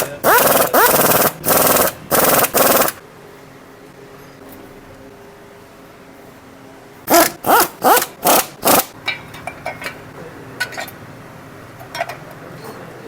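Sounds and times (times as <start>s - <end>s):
ratchet wrench rasping: 0.0s - 3.0s, 7.1s - 8.9s.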